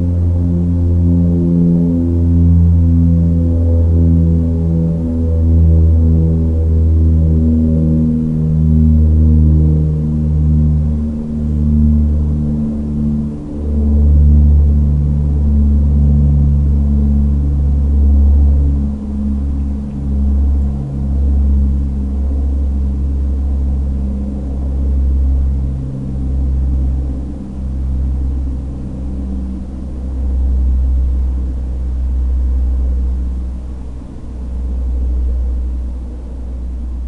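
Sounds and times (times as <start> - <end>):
heavy low rumble: 0.0 - 37.0
propeller airplane humming tones: 0.0 - 37.0.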